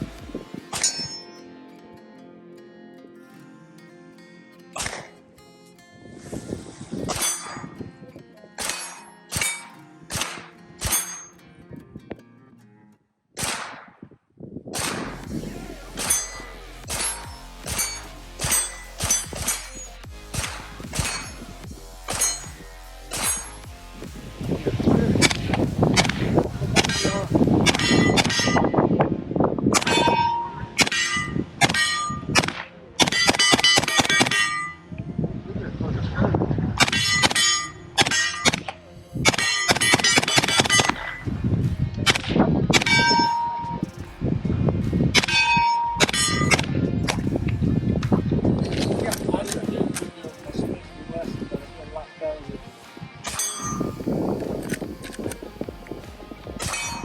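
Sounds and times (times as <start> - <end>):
background music: 0.0 - 12.7, 14.8 - 57.0
metallic ring of steel targets: 0.7 - 1.4, 7.1 - 7.8, 8.6 - 11.3, 14.8 - 23.7, 24.9 - 28.8, 29.7 - 34.9, 36.8 - 41.3, 42.1 - 44.1, 45.2 - 47.3, 53.2 - 54.8, 56.6 - 57.0
gunshots: 4.8 - 5.1, 7.1 - 7.7, 8.6 - 11.3, 13.4 - 14.1, 14.7 - 24.2, 24.8 - 28.6, 29.8 - 34.7, 36.8 - 41.2, 42.1 - 43.6, 56.6 - 57.0.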